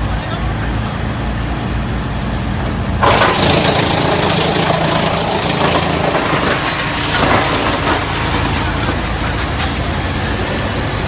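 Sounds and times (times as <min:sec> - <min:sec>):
wood chipper humming: 0:02.6 - 0:11.0
logs being chipped: 0:03.0 - 0:10.0.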